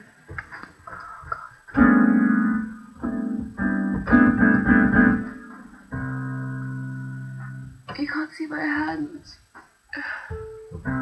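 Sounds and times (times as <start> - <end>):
electronic keyboard chords: 1.7 - 7.9, 10.3 - 11.0.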